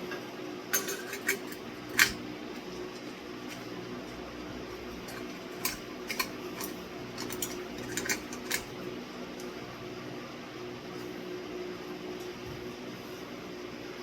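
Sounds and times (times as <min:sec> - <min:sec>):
glass shades clinking on metal: 0:00.7 - 0:02.2, 0:05.0 - 0:08.8.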